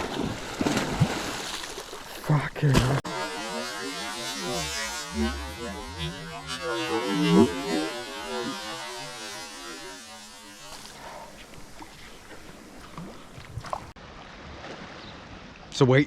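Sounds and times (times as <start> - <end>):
boat engine running: 2.7 - 13.9.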